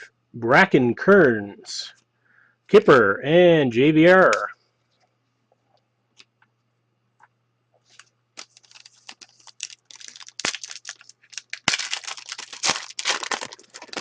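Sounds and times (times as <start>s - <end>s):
foil wrapper crinkling and tearing: 8.4s - 14.0s.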